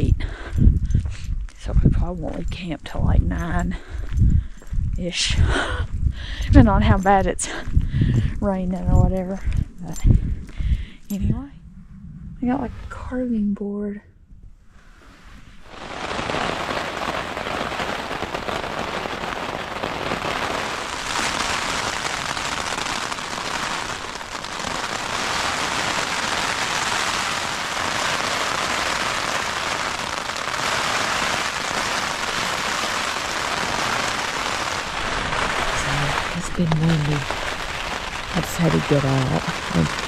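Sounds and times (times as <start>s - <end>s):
wind gusts: 0.0s - 13.6s, 14.3s - 40.0s
hard rain on a tent: 15.7s - 40.0s.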